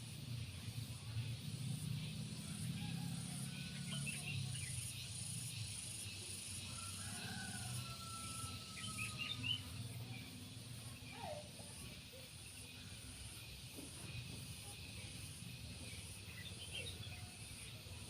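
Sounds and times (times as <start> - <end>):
crickets chirping: 0.0 - 18.0.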